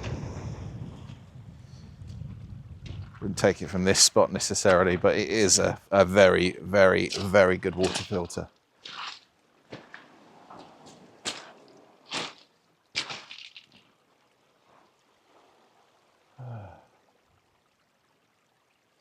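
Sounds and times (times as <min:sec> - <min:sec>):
stream trickling: 0:02.8 - 0:19.0
footsteps splashing in stream: 0:07.0 - 0:14.1
low grunt: 0:16.4 - 0:16.9.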